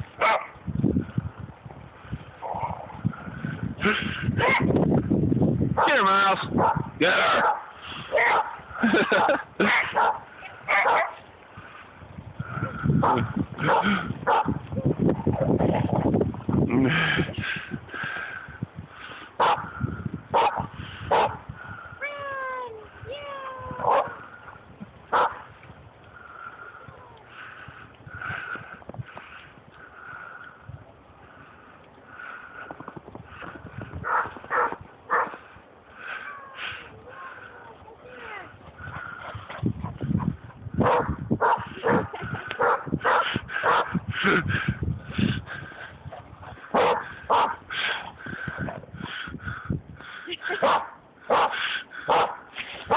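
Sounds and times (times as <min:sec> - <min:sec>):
dog barking: 0:00.2 - 0:00.5, 0:04.4 - 0:04.7, 0:06.6 - 0:11.2, 0:13.0 - 0:14.6, 0:19.4 - 0:19.6, 0:20.4 - 0:21.4, 0:23.8 - 0:24.2, 0:25.1 - 0:25.4, 0:34.1 - 0:35.4, 0:40.8 - 0:43.9, 0:46.8 - 0:47.6, 0:50.6 - 0:52.9.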